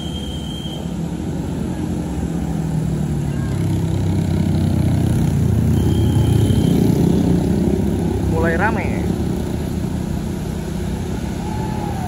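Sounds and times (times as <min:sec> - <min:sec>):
bus diesel engine approaching: 0:00.0 - 0:12.0.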